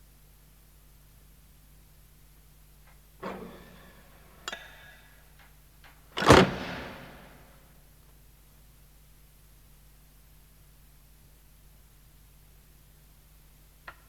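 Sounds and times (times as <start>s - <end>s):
door latch clicks: 3.2s - 4.7s, 6.2s - 7.5s
door thud: 3.2s - 4.7s, 6.2s - 7.5s
door slamming: 3.2s - 4.9s, 6.2s - 7.6s.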